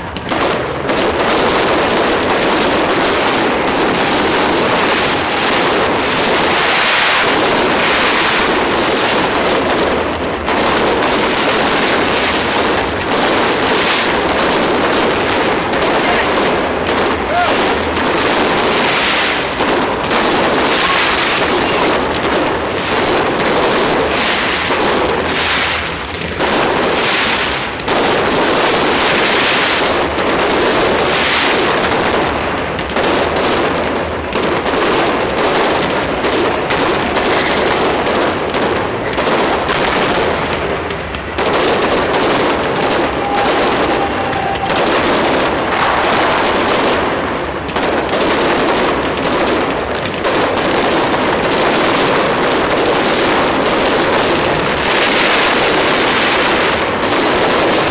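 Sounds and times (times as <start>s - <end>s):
fireworks bangs and crackles: 0.0s - 57.9s.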